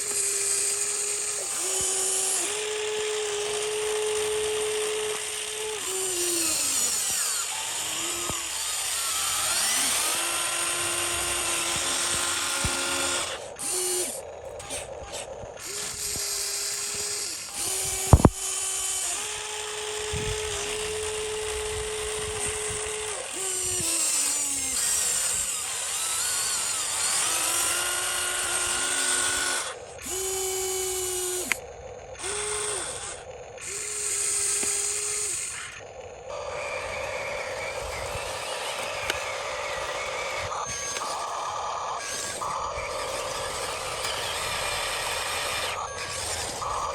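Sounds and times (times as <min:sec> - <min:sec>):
grinding and scraping: 0:00.0 - 0:46.9
toy motors whirring: 0:00.0 - 0:46.9
sharp click: 0:15.8 - 0:18.4.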